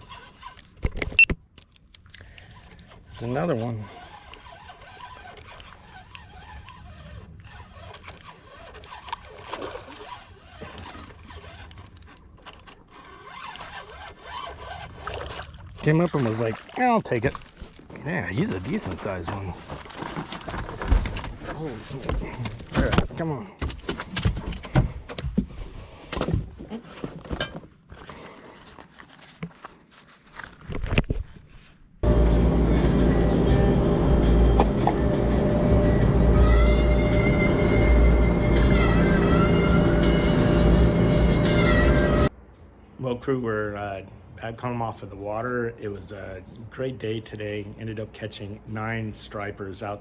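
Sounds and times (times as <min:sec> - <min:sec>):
knocks and clatter in a boat: 0:18.5 - 0:25.6.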